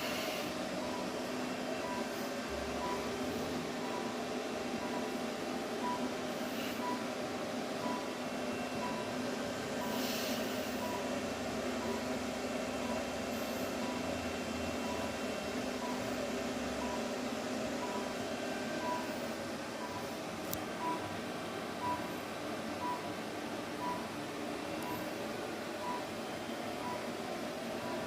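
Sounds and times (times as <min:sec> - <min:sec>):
steady hum: 0:00.0 - 0:28.0
short faint beeps: 0:01.8 - 0:03.1, 0:04.8 - 0:05.2, 0:05.8 - 0:06.1, 0:06.8 - 0:07.1, 0:07.8 - 0:09.2, 0:14.8 - 0:15.2, 0:17.8 - 0:19.2, 0:21.8 - 0:22.1, 0:22.8 - 0:23.1, 0:23.8 - 0:24.1, 0:25.8 - 0:26.2, 0:26.8 - 0:27.2, 0:27.8 - 0:28.0.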